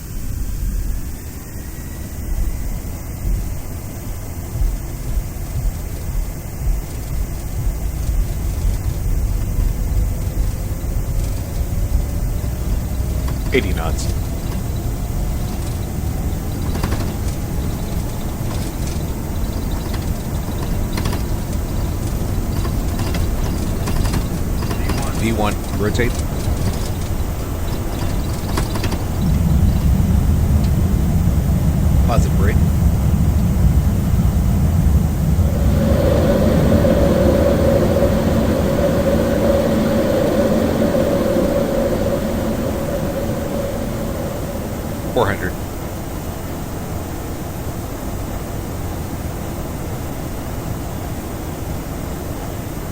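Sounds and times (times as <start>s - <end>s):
jet engines rumbling on takeoff: 0.0s - 52.9s
steady hum: 0.0s - 52.9s
light clicks and rattles: 4.5s - 33.4s.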